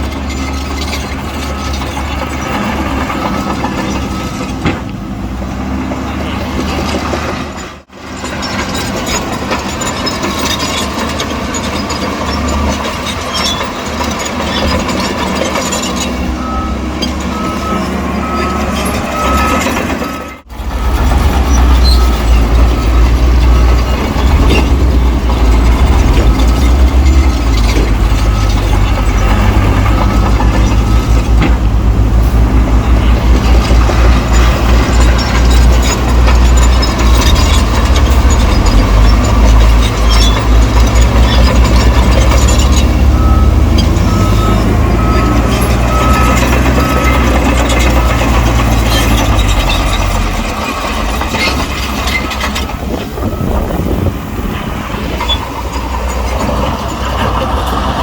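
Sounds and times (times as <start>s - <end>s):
heavy diesel machinery running: 0.0s - 58.0s
reversing beeper: 15.8s - 31.6s, 32.2s - 50.1s.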